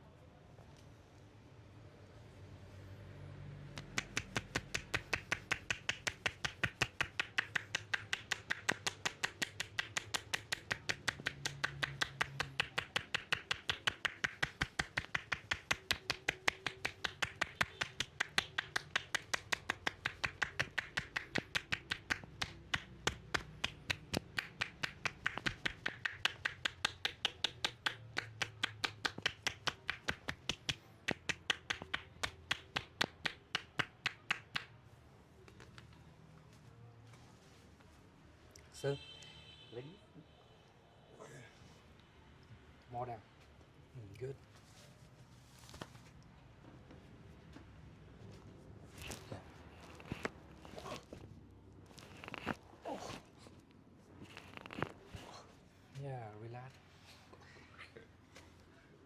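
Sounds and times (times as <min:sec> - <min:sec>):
massage tapping on body: 0:03.7 - 0:34.8, 0:49.0 - 0:55.4.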